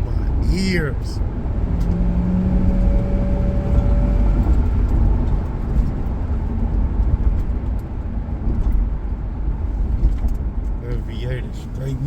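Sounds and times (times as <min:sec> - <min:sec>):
car engine and exhaust rumbling: 0:00.0 - 0:12.0.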